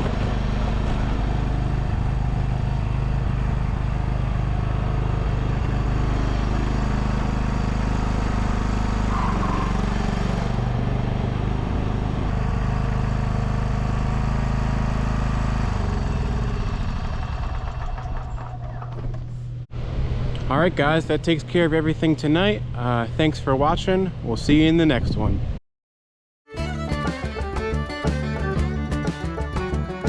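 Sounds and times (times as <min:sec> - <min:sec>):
farm machine engine running: 0:00.0 - 0:09.0, 0:26.5 - 0:30.0.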